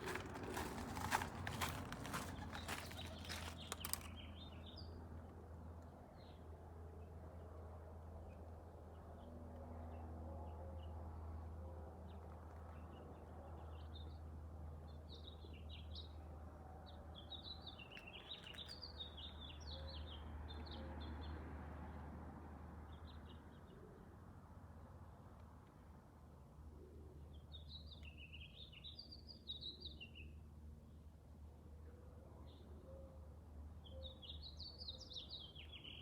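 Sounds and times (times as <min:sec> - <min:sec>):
small birds chirping: 0:00.0 - 0:04.9.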